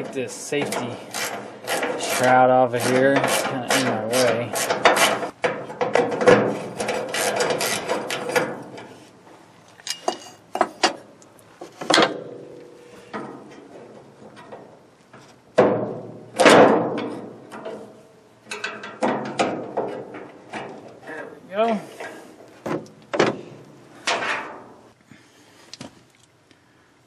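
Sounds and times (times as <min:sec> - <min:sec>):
sharp clicks and knocks: 0:02.8 - 0:08.9, 0:09.7 - 0:24.8.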